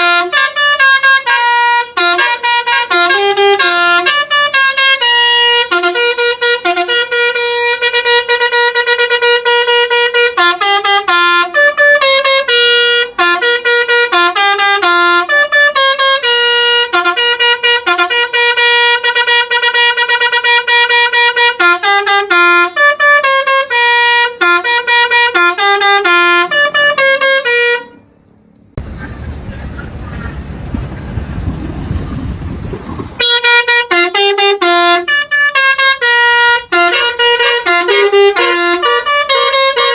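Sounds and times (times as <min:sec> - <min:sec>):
bus musical air horn: 0:00.0 - 0:39.9
low rumbling noise: 0:28.1 - 0:33.6.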